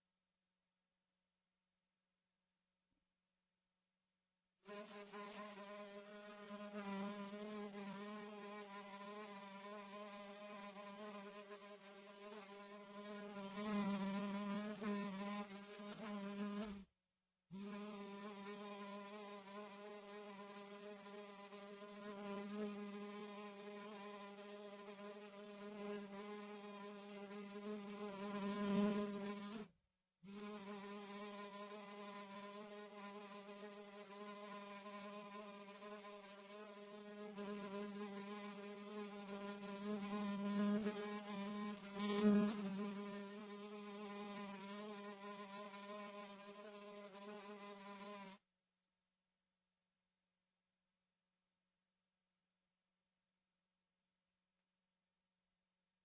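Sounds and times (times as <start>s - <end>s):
fly buzzing: 4.7s - 16.9s, 17.6s - 29.7s, 30.3s - 48.4s.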